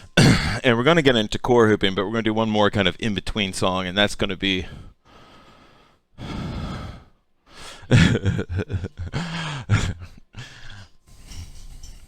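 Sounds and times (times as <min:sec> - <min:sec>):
person sighing heavily: 0:06.2 - 0:10.9.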